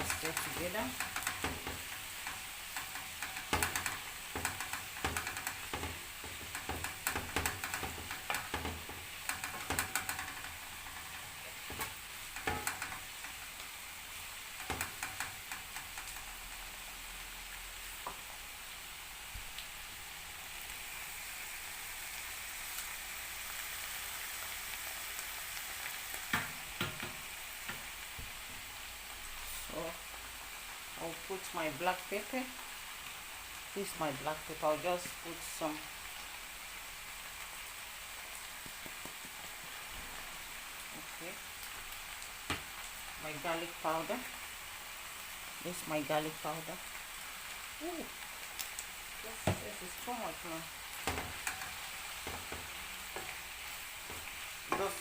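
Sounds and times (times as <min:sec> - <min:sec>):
spoon scraping and knocking pan: 0:00.0 - 0:13.6, 0:14.5 - 0:16.4, 0:26.3 - 0:28.6, 0:51.0 - 0:55.0
vegetables sizzling in a frying pan: 0:00.0 - 0:55.0.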